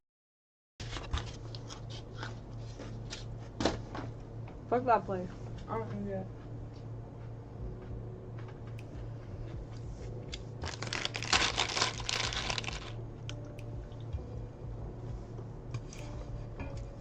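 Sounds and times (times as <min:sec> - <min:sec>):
plastic bag crinkling: 0:10.6 - 0:13.0.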